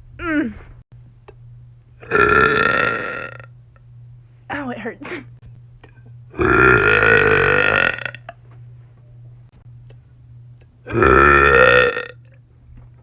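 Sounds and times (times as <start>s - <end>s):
woman belching: 2.0s - 3.5s, 6.3s - 8.4s, 10.9s - 12.3s.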